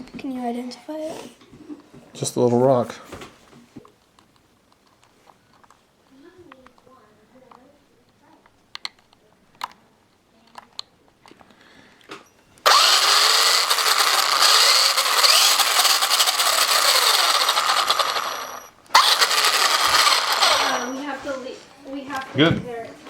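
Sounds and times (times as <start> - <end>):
electric motor whirring: 12.7 - 21.0.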